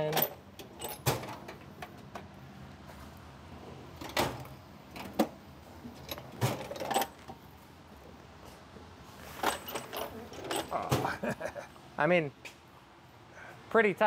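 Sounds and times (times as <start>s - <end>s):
hand tools clinking against metal: 0.0s - 1.7s, 5.9s - 7.3s, 9.4s - 11.3s.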